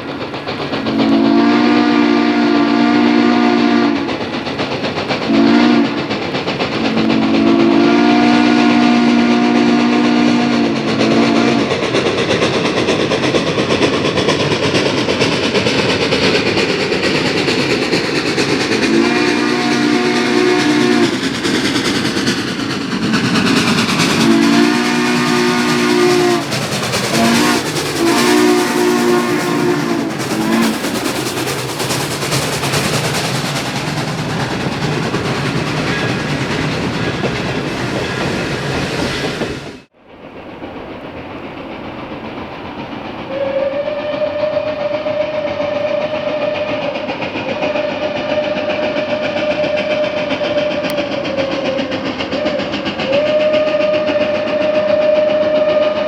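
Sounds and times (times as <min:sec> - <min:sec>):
locomotive and train rushing: 0:00.0 - 0:56.0
steam locomotive whistle: 0:00.8 - 0:04.2, 0:05.2 - 0:06.1, 0:06.8 - 0:11.8, 0:18.4 - 0:39.8, 0:43.2 - 0:56.0.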